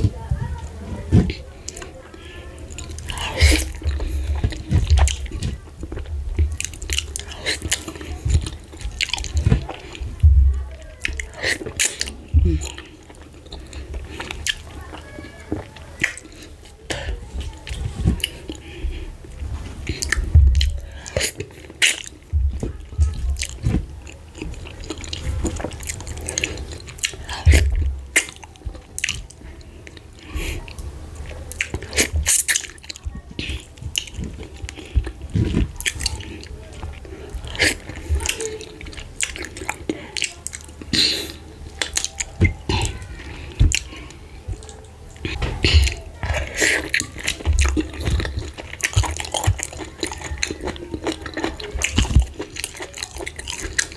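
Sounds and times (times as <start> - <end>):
wet chewing and slurping: 0.0 - 53.9
low thuds: 9.3 - 10.7, 19.7 - 20.8.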